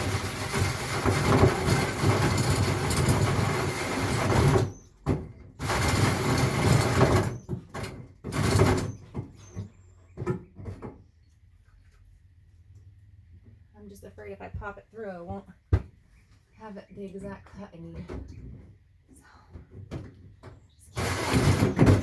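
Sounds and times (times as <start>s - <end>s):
power drill cutting: 21.0s - 22.0s.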